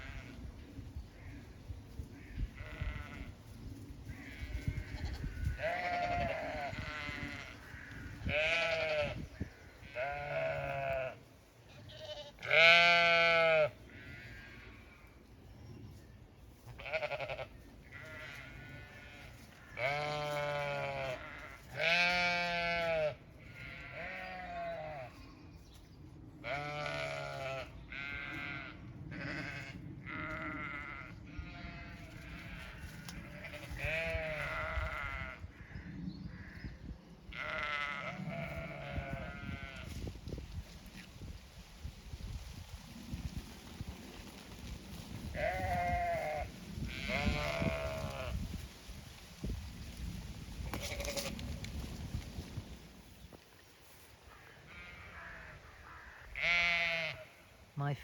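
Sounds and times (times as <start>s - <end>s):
sheep bleating: 4.2s - 9.2s, 9.8s - 14.8s, 16.8s - 25.2s, 26.4s - 35.4s, 37.3s - 39.9s, 45.3s - 48.4s, 50.7s - 51.4s, 54.7s - 55.5s, 56.4s - 57.4s.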